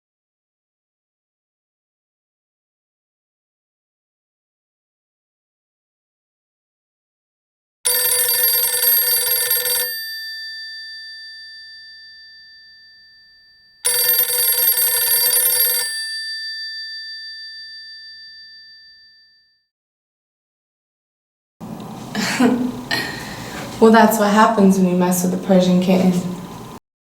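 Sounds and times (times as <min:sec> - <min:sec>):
telephone bell ringing: 0:07.9 - 0:19.6.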